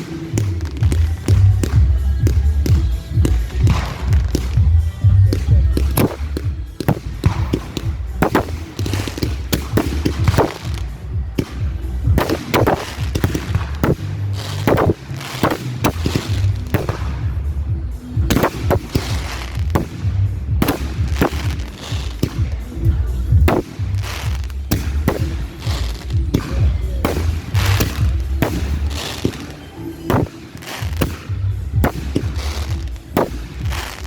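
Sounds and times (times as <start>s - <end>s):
fireworks bangs and crackles: 0.0s - 34.0s
music with heavy bass: 0.0s - 34.0s.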